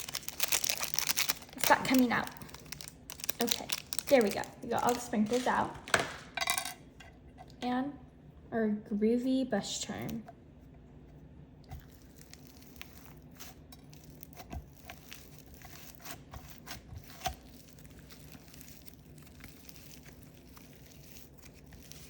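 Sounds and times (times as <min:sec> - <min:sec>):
slime clicking and crackling: 0:00.0 - 0:05.6, 0:11.7 - 0:22.0
low steady hum: 0:00.0 - 0:22.0.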